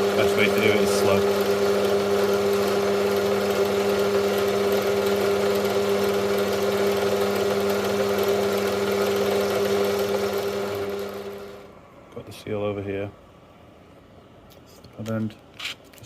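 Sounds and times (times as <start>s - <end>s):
electric drill whining: 0.0s - 11.6s.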